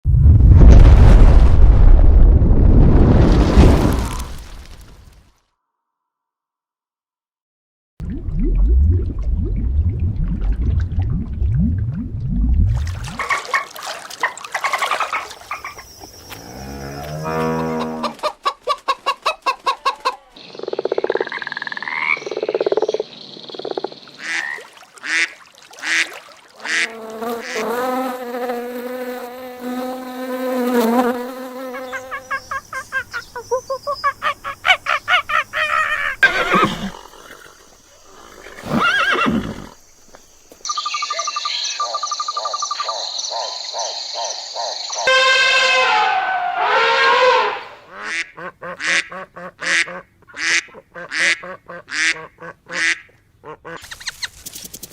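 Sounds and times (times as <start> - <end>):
animal calls and cries: 13.2 - 23.0, 31.8 - 37.5, 40.7 - 54.4
long falling animal call: 34.0 - 37.5.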